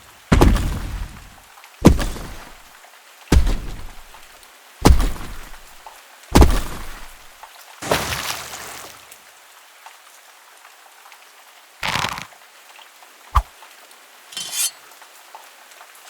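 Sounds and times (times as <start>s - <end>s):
sharp knock with low thud: 1.8s - 2.6s, 3.3s - 4.2s, 4.8s - 5.6s, 6.4s - 7.2s.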